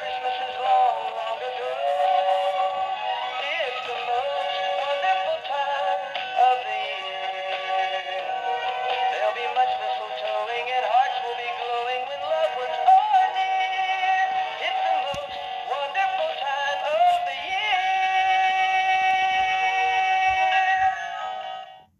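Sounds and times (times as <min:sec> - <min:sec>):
toy speaker song: 0:00.0 - 0:07.3.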